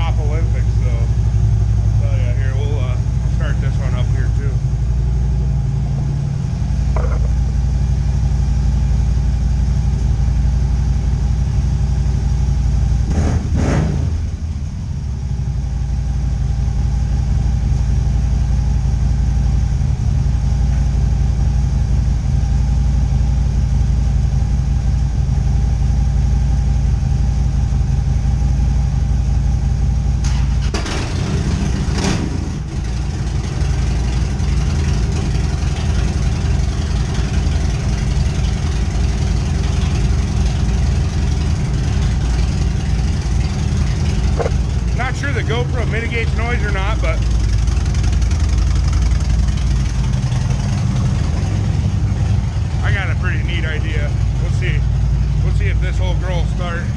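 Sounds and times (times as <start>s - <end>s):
motorcycle engine idling and revving: 0.0s - 56.9s.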